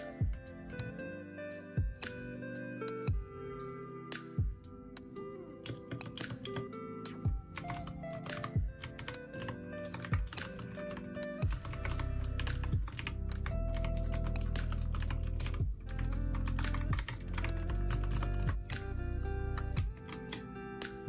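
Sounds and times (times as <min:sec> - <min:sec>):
mechanical keyboard key clicks: 0:07.6 - 0:18.7
music with heavy bass: 0:11.4 - 0:21.0.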